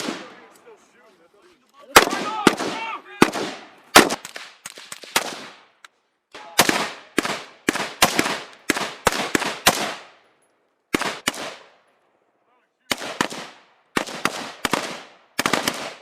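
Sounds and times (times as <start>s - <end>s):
rifle shots: 0.0s - 0.6s, 2.0s - 5.7s, 6.4s - 10.2s, 10.9s - 11.8s, 12.9s - 16.0s.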